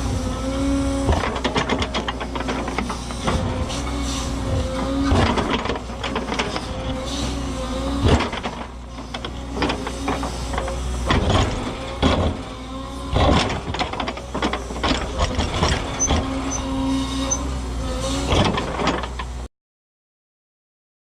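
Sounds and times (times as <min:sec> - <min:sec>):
excavator diesel engine under load: 0:00.0 - 0:19.5
steel scraping squeals on rock: 0:15.4 - 0:18.3.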